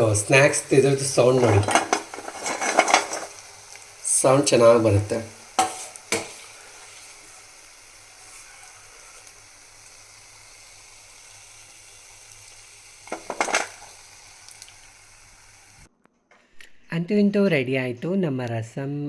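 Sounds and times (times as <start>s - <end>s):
snacks sizzling in hot oil: 0.0s - 15.9s.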